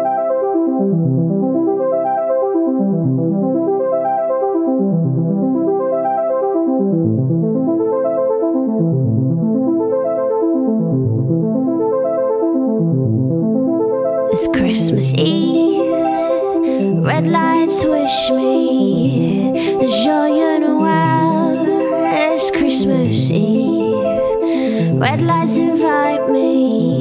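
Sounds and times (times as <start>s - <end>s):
instrumental music: 13.7s - 27.0s.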